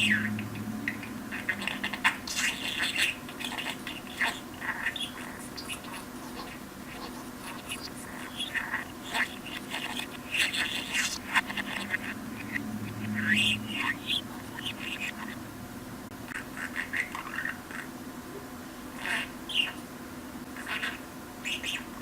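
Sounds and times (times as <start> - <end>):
budgerigar chattering: 0.0 - 15.4, 16.3 - 17.9, 19.0 - 19.9, 20.6 - 22.0.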